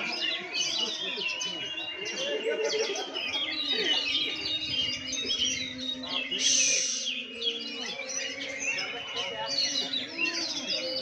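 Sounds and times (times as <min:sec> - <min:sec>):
birds singing: 0:00.0 - 0:11.0.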